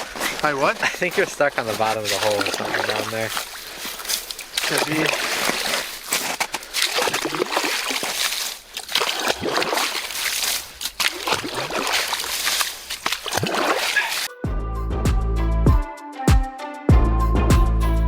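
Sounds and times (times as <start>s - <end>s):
water splashing and sloshing: 0.0s - 14.3s.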